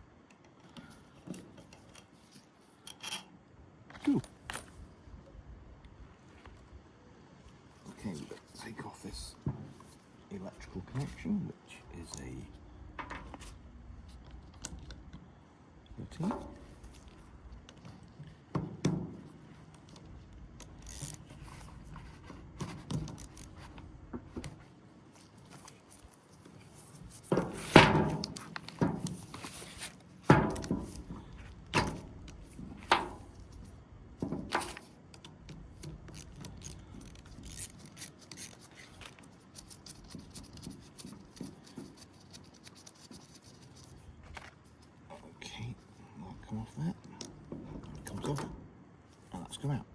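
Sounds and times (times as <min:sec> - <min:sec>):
rubbing: 0:35.7 - 0:45.1.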